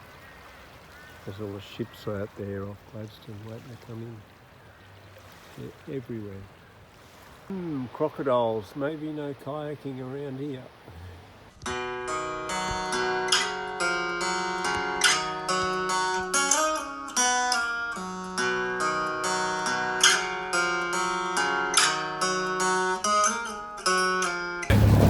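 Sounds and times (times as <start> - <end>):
plucked string music: 11.6 - 25.0.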